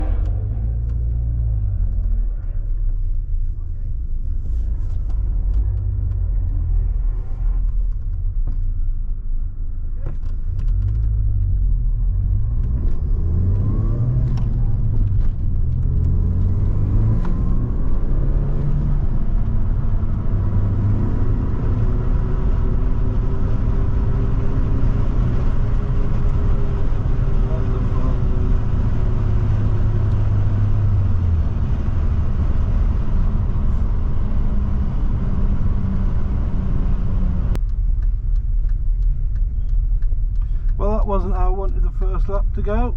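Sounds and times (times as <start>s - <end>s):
car engine running: 0.0s - 42.9s
sharp clicks: 37.5s - 42.3s.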